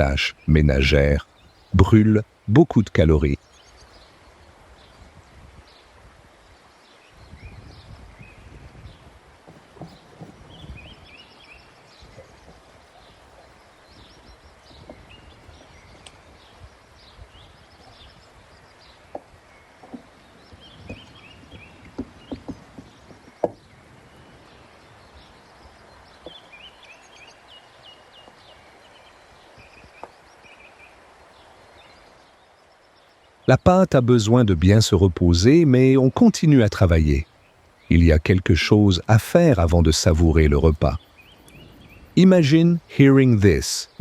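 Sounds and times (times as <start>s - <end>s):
small birds chirping: 0.0s - 44.0s
knocks and taps: 21.9s - 23.6s.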